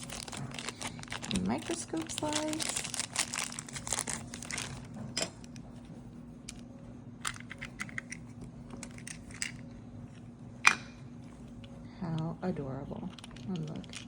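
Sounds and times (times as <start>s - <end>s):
plastic packaging crinkling: 0.0s - 5.1s, 13.1s - 14.0s.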